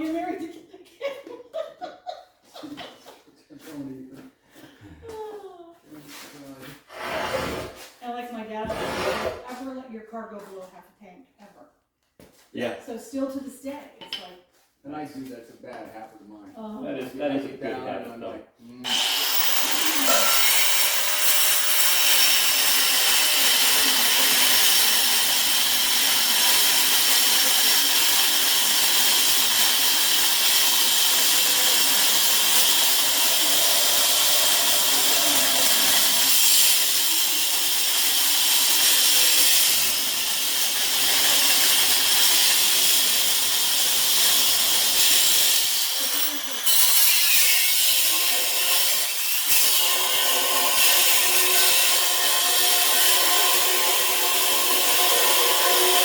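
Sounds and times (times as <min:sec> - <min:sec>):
power tool blade cutting steel: 0:18.8 - 0:56.0.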